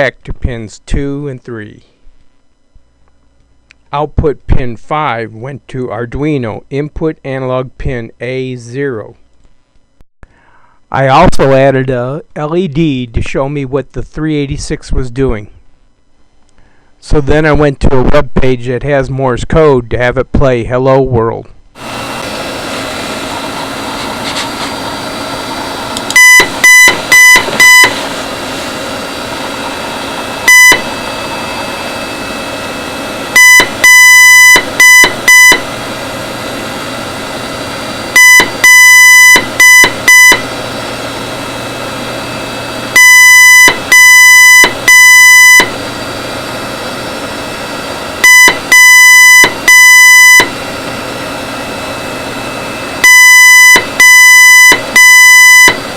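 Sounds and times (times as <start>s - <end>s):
morse code beeps: 26.2s - 28.0s, 30.5s - 30.9s, 33.4s - 35.6s, 38.2s - 40.5s, 43.0s - 45.8s, 48.2s - 50.5s, 53.0s - 55.8s.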